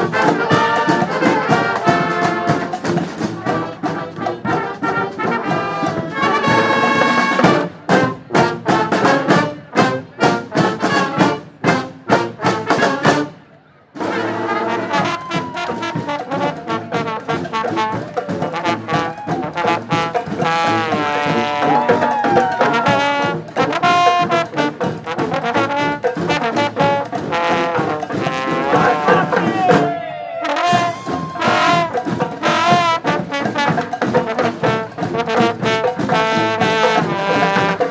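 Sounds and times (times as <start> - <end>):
brass band playing: 0.0 - 37.9.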